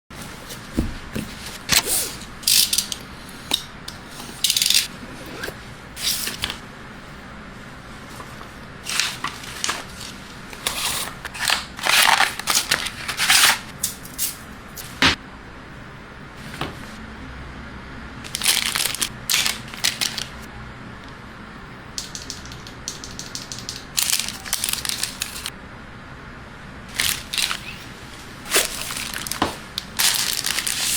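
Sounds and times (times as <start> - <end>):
crinkling handling noise: 0.1 - 6.6, 7.9 - 15.0, 18.2 - 20.5, 22.0 - 25.5, 26.9 - 30.9.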